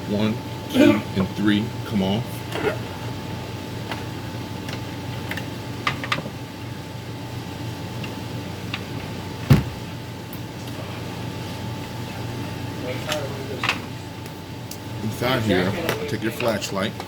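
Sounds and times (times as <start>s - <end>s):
steady low hum: 0.0s - 17.0s
loud knock: 9.5s - 9.8s.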